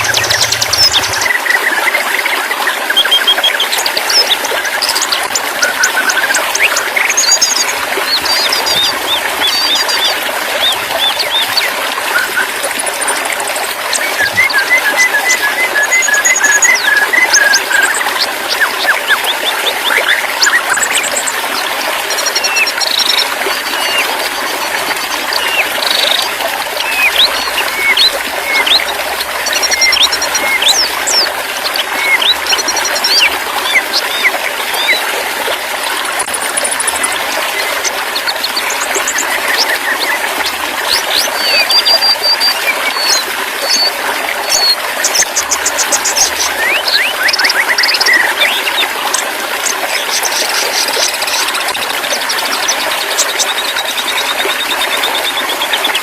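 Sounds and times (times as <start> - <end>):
water trickling: 0.0 - 56.0
bird chirps and whistles: 14.0 - 20.8, 25.3 - 31.3, 44.5 - 48.8.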